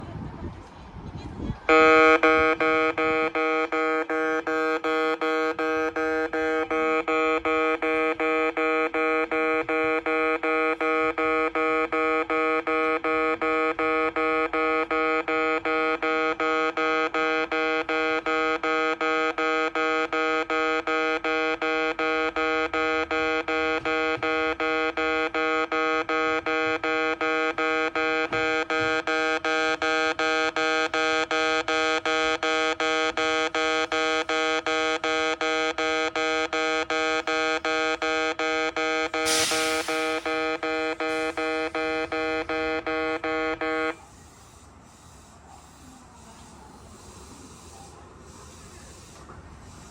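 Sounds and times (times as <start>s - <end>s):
level-crossing electronic bell ringing: 39.2s - 44.0s.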